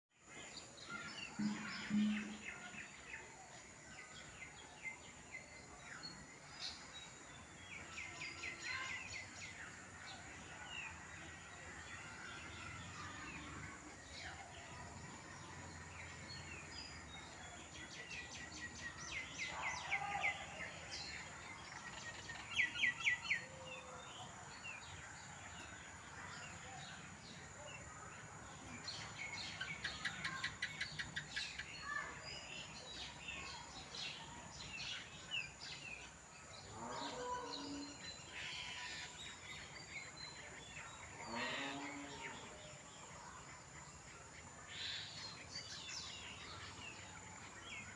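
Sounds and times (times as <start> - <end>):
birds chirping and calling: 0.9 - 3.3
bird trills: 1.3 - 2.8.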